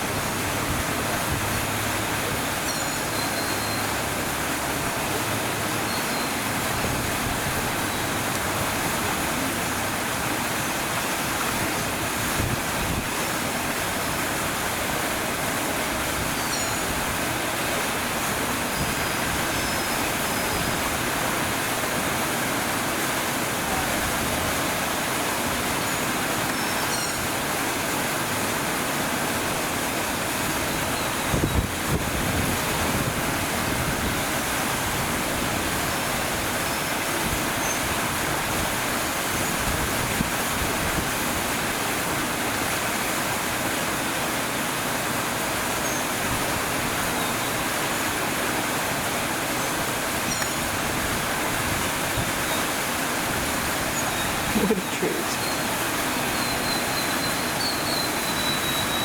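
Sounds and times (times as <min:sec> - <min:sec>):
fountain water splashing: 0:00.0 - 0:59.0.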